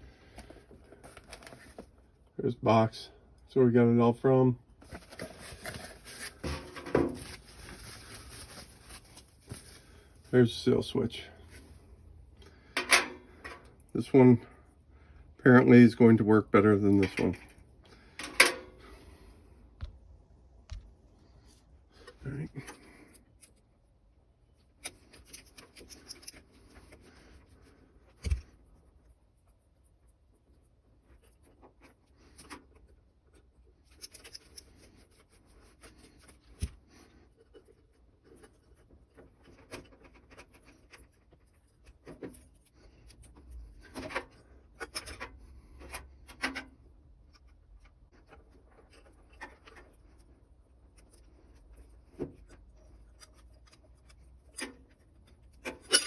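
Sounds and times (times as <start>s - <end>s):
small clicks and rubbing: 24.5s - 56.0s.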